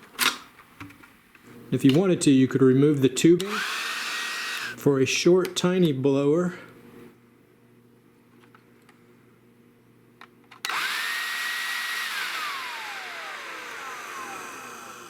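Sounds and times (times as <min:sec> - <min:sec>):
leaf blower motor whine: 0:03.4 - 0:04.8, 0:10.6 - 0:15.0.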